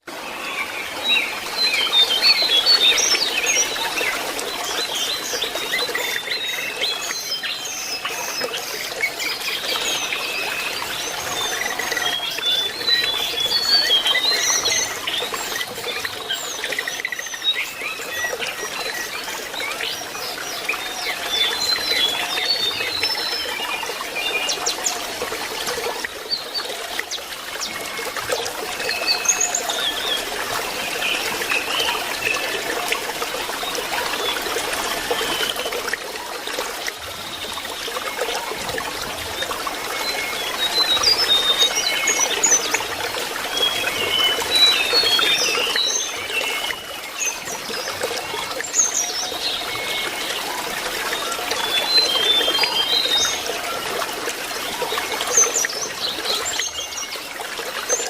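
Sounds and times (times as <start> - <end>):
running water trickling: 0.1 - 58.0.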